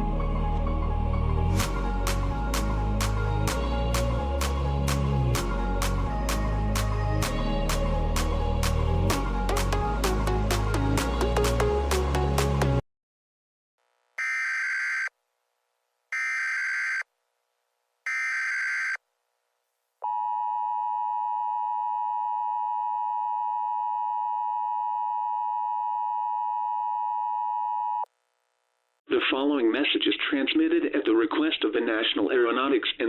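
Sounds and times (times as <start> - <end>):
music: 0.0 - 12.8.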